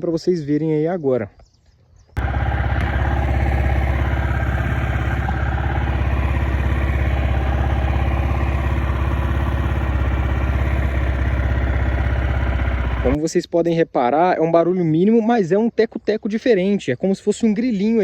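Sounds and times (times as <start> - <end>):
light engine ticking: 2.2 - 13.2
motorcycle engine idling: 2.2 - 13.2.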